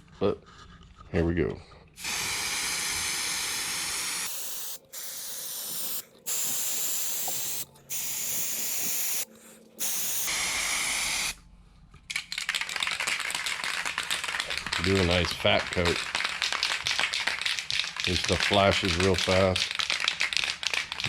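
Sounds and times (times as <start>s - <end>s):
spray can hissing: 2.0s - 11.4s, 14.3s - 21.0s.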